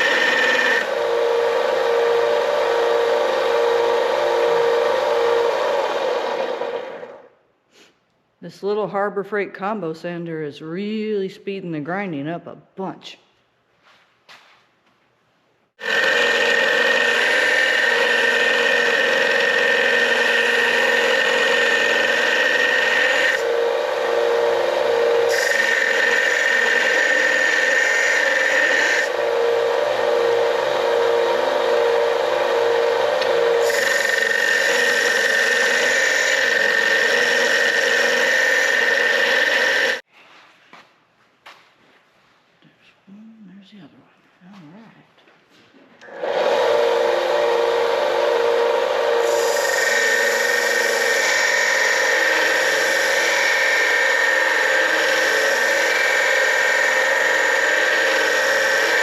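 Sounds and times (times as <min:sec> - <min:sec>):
belt sander grinding steel: 0:00.0 - 0:07.3, 0:15.8 - 0:40.1, 0:46.0 - 0:59.0.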